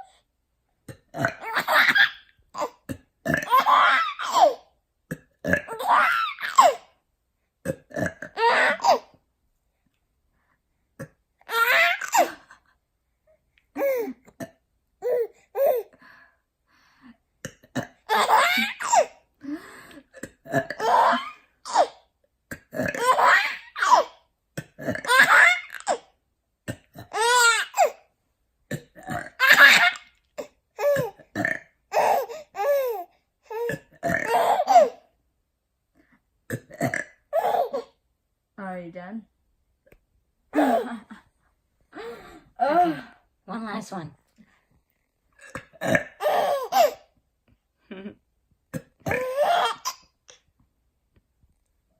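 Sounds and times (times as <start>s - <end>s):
person burping: 0.8s - 1.6s, 2.8s - 3.8s, 5.1s - 5.9s, 7.6s - 8.7s, 14.3s - 14.6s, 17.4s - 18.2s, 19.5s - 21.3s, 22.5s - 23.2s, 24.6s - 25.5s, 26.7s - 27.3s, 28.7s - 29.7s, 30.8s - 31.8s, 33.5s - 34.6s, 36.5s - 37.3s, 45.4s - 46.3s, 47.9s - 49.7s
baby laughing and squealing: 3.5s - 4.7s, 5.7s - 6.9s, 8.4s - 9.1s, 11.5s - 12.5s, 18.1s - 19.2s, 23.0s - 24.2s, 25.1s - 26.1s, 27.1s - 28.0s, 29.4s - 30.1s, 31.9s - 33.7s, 34.3s - 35.0s, 46.2s - 47.1s, 49.1s - 50.0s.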